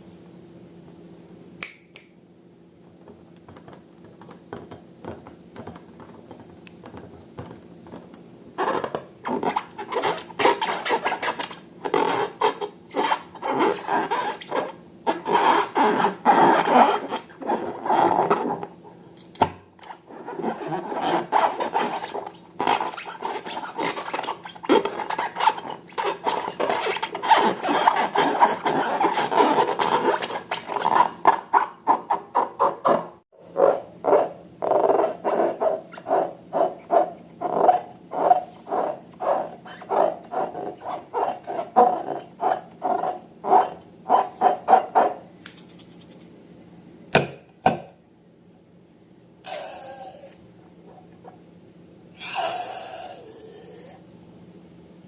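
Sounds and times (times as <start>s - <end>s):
slime rubbing and squishing: 20.1s - 33.0s.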